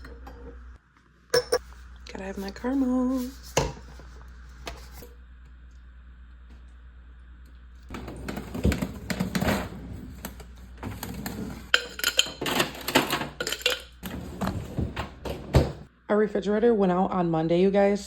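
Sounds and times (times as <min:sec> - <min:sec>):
low steady hum: 0:00.0 - 0:18.0
dishes and utensils clattering: 0:07.9 - 0:15.9.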